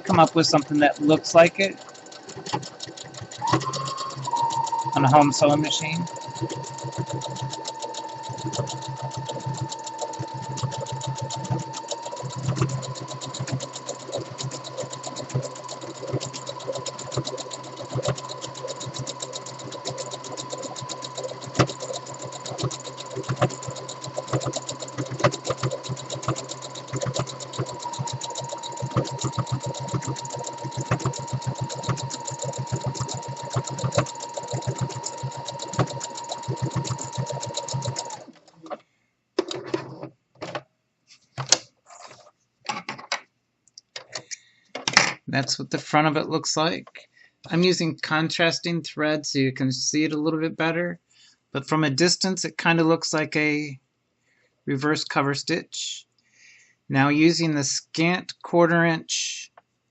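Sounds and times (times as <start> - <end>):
sewing machine running: 0.0 - 38.5.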